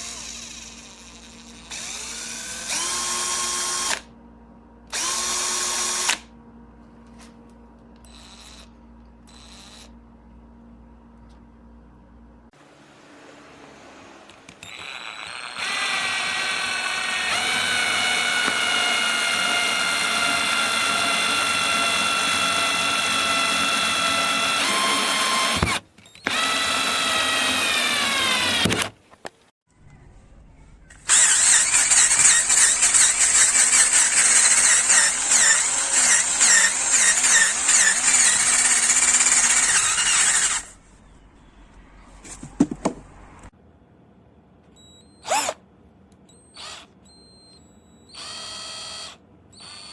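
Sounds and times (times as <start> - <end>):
cordless drill motor whining: 0.0 - 4.1, 4.9 - 6.2, 8.0 - 10.0, 14.5 - 29.0, 31.0 - 40.8, 44.8 - 45.6, 46.3 - 49.9.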